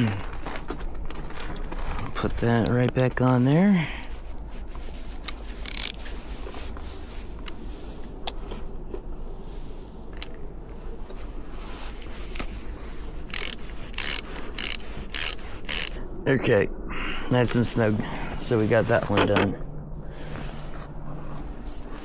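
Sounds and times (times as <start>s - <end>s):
socket ratchet clicking: 5.3s - 6.0s, 12.3s - 12.5s, 13.3s - 16.0s.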